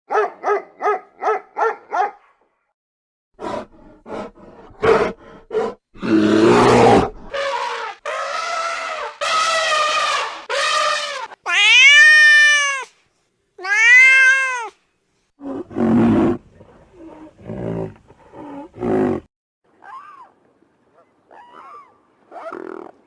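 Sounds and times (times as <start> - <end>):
cat meowing: 11.1 - 12.9, 13.6 - 14.8.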